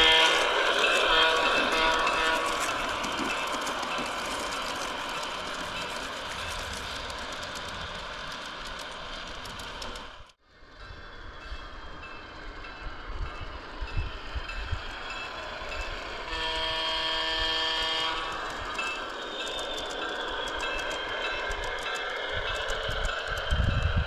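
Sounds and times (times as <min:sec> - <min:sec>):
locomotive horn blast: 0:00.0 - 0:02.6, 0:16.2 - 0:18.4
model diesel locomotive engine: 0:00.0 - 0:24.0.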